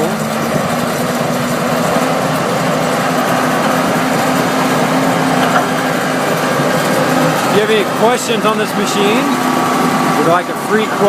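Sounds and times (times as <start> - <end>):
bulldozer diesel engine running: 0.0 - 11.0.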